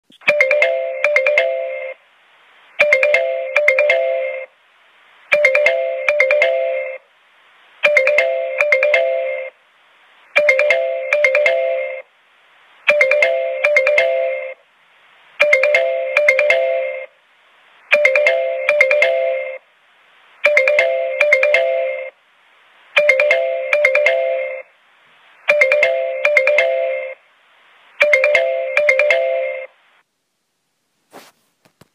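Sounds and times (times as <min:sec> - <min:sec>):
electronic ringtone melody: 0:00.2 - 0:02.0, 0:02.8 - 0:04.5, 0:05.3 - 0:07.0, 0:07.8 - 0:09.6, 0:10.4 - 0:12.1, 0:12.9 - 0:14.6, 0:15.4 - 0:17.1, 0:17.9 - 0:19.6, 0:20.4 - 0:22.2, 0:23.0 - 0:24.7, 0:25.5 - 0:27.2, 0:28.0 - 0:29.8.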